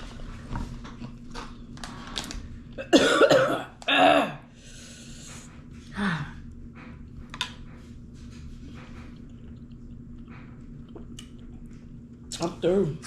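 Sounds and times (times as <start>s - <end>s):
faint hum: 0.0s - 13.0s
person gasping and breathing hard: 4.2s - 6.4s.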